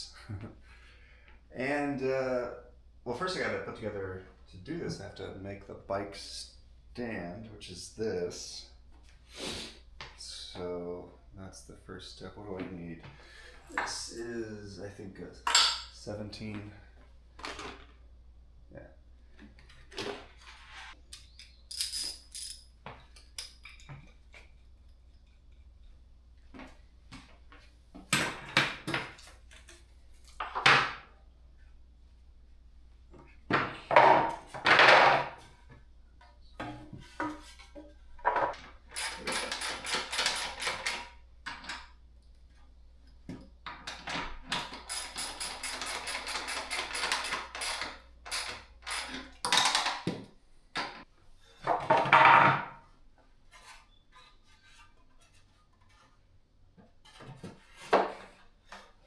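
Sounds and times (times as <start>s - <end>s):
metal tools clanking and rattling: 15.4s - 16.0s, 21.2s - 24.3s, 36.6s - 41.8s
ratchet clicking rapidly: 44.9s - 49.2s.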